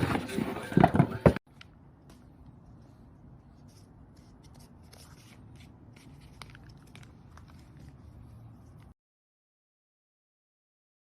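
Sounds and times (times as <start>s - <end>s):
low steady hum: 1.5s - 9.0s.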